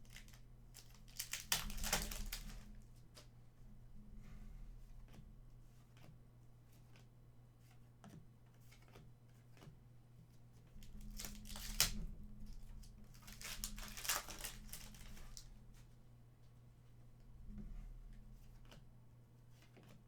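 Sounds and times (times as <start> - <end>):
wrapper tearing and crinkling: 0.0 - 2.7, 10.9 - 12.0, 13.1 - 15.5.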